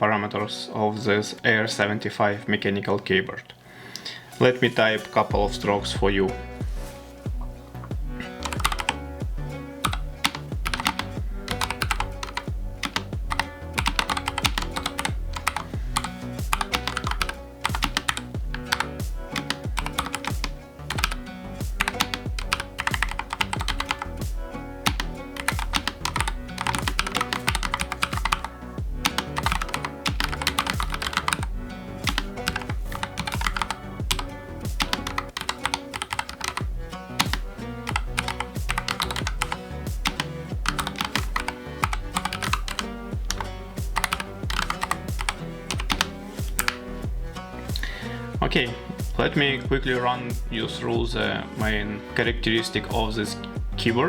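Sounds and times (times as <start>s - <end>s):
background music: 0.0s - 54.0s
fast typing on mechanical keyboard: 8.4s - 9.0s, 9.8s - 21.2s, 21.8s - 24.1s, 24.8s - 36.6s, 37.2s - 43.4s, 44.0s - 46.8s.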